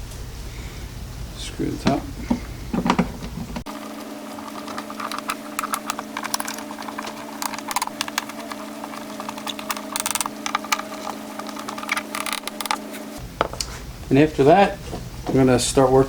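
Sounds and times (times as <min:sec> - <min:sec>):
steady hum: 0:00.0 - 0:16.0
metal parts and tool clicking: 0:04.3 - 0:13.1.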